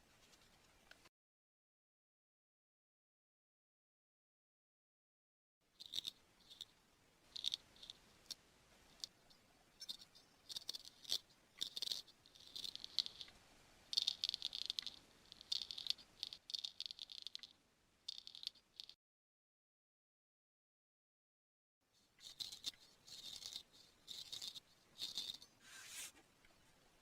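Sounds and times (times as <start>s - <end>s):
razor scraping strokes: 22.2s - 26.2s.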